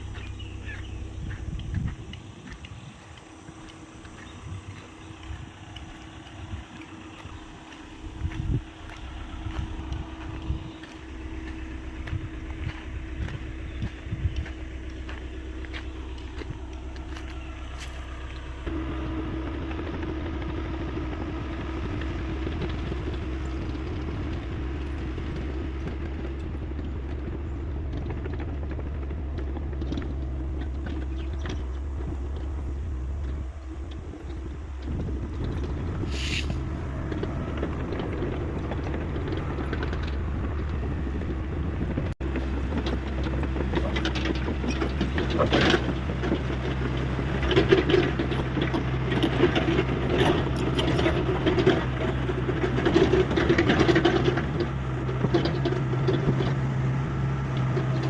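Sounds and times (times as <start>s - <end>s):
excavator diesel engine running: 0.0s - 58.0s
short hiss: 36.1s - 36.6s.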